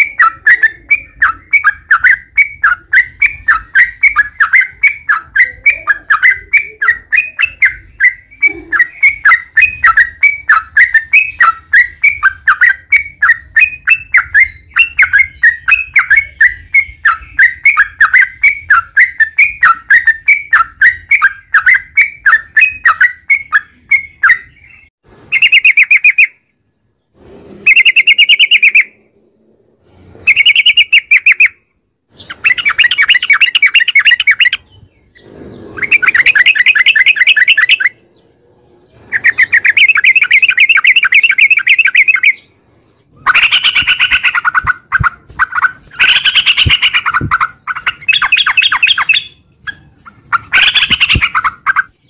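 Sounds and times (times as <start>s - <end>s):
bulbul chattering song: 0.0s - 26.5s, 27.7s - 29.2s, 30.2s - 52.0s.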